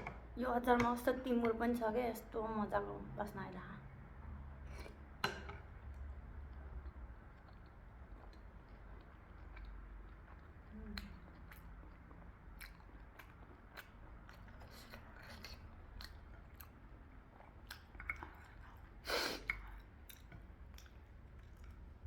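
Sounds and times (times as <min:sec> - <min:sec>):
person chewing food: 0:04.7 - 0:22.0.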